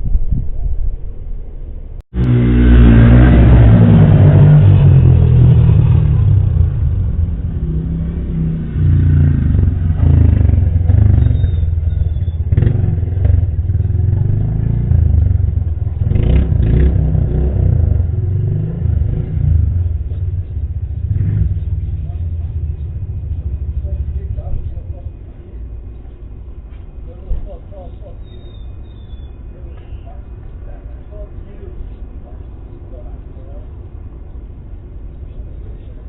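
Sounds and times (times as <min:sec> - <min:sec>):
vehicle engine revving: 0:02.1 - 0:25.6.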